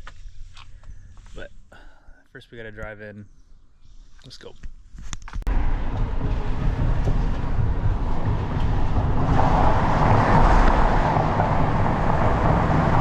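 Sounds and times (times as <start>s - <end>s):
car road and engine rumble: 5.5s - 13.0s.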